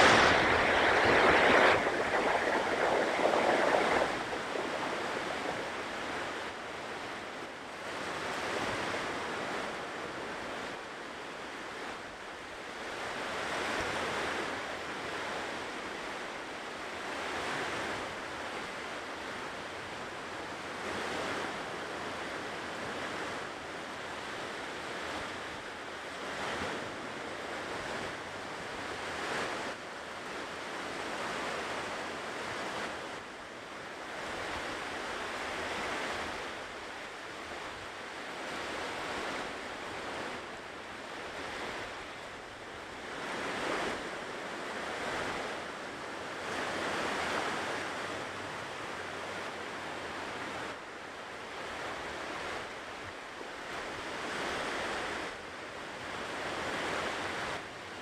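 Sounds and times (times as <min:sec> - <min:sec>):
waves breaking on shore: 0:00.0 - 0:09.6, 0:24.4 - 0:58.0.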